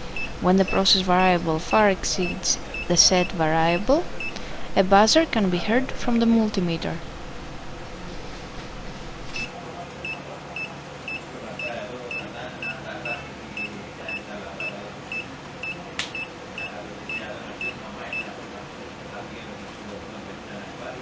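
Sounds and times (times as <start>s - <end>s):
multimeter buzzer beeping: 0.0s - 9.5s.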